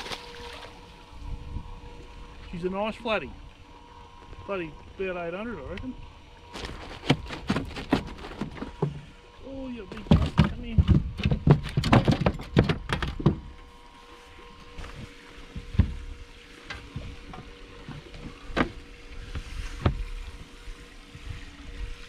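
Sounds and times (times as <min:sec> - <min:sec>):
fish thrashing in a boat: 0:06.4 - 0:09.2.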